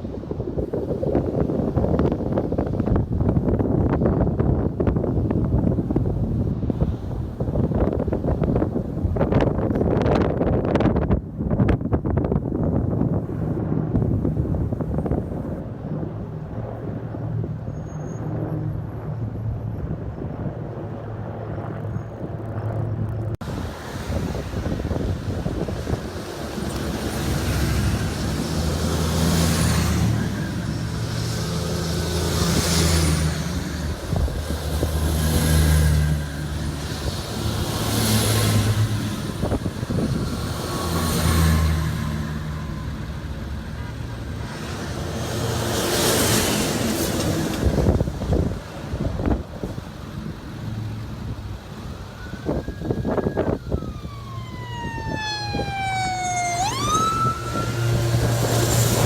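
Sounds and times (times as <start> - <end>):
trucks driving past: 22.2 - 59.0.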